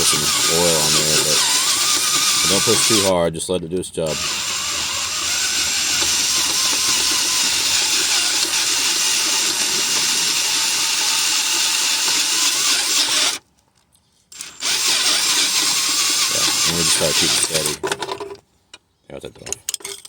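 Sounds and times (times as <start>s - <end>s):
power drill cutting metal: 0.0s - 3.2s, 4.0s - 13.4s, 14.4s - 17.8s.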